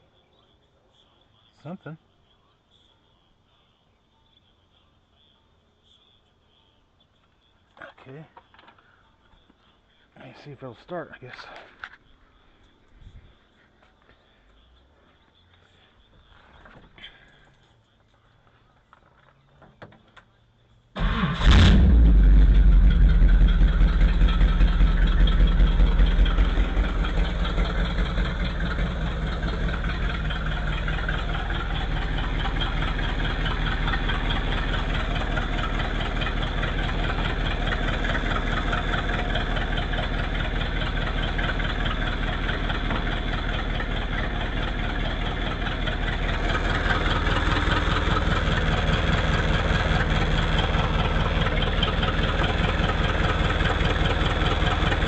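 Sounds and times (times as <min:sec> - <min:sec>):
car engine idling: 0:20.3 - 0:55.0
car starter cranking: 0:21.0 - 0:55.0.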